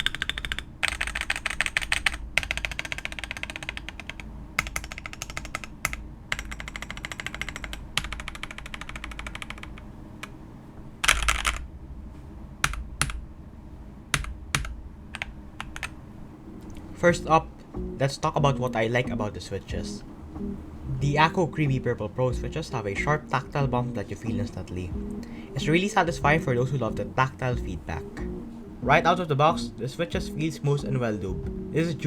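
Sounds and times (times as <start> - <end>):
mechanical keyboard typing: 0.0 - 10.4, 11.0 - 11.7, 12.6 - 13.2, 14.1 - 16.0.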